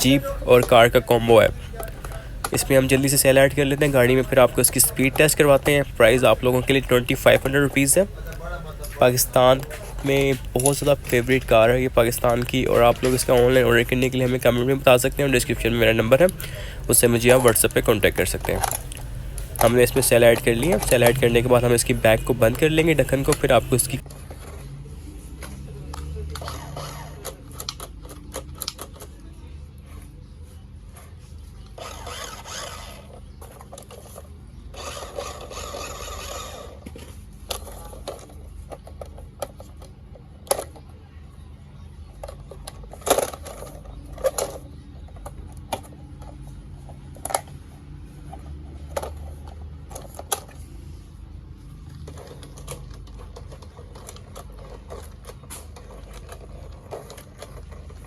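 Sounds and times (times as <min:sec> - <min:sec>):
sharp plastic clicks and knocks: 0:00.0 - 0:24.0
toy car motor and gears whirring: 0:00.0 - 0:29.2, 0:31.0 - 0:40.8, 0:42.1 - 0:58.0.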